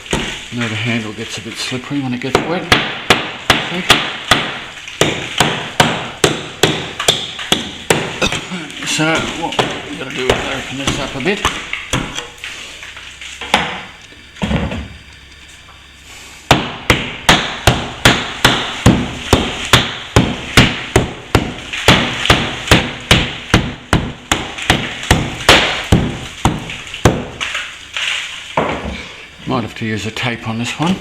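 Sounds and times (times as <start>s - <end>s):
hammer striking: 2.3s - 8.4s, 9.0s - 12.4s, 16.5s - 27.4s.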